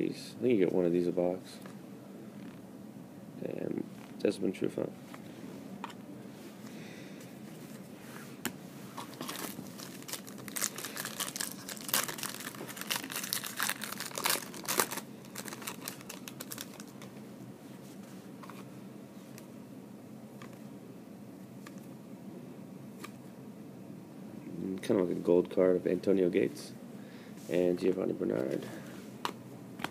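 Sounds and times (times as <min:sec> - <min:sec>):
plastic wrapper crinkling and tearing: 0:09.1 - 0:17.1.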